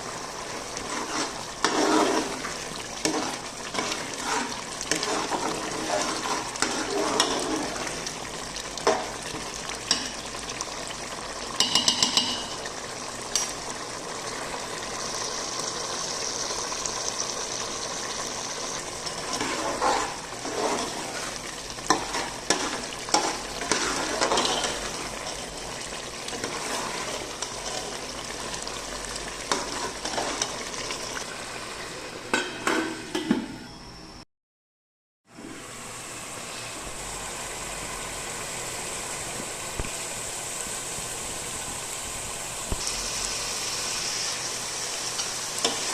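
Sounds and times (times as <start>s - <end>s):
meat sizzling in a pot: 0.0s - 33.2s, 35.3s - 45.9s
spoon scraping a pot: 0.8s - 8.0s, 19.1s - 25.4s, 26.3s - 28.0s, 29.5s - 30.6s.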